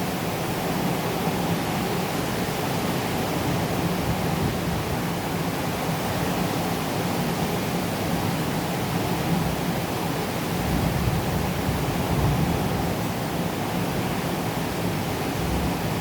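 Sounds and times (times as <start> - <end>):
steady rain falling: 0.0 - 16.0.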